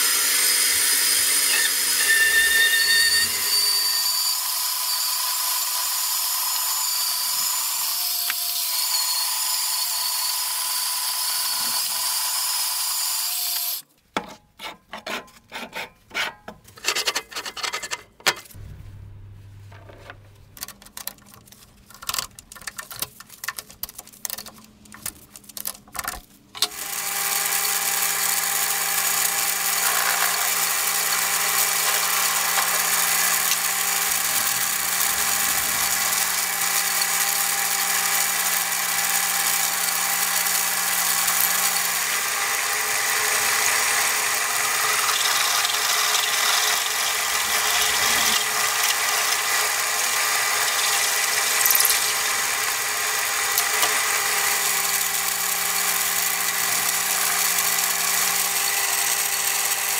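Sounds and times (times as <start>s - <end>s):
metal lathe cutting: 0.0s - 13.8s, 26.7s - 59.9s.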